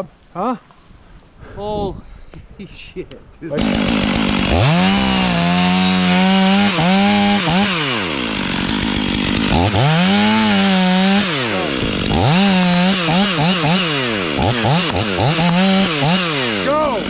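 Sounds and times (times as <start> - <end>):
chainsaw revving: 3.5 - 17.0.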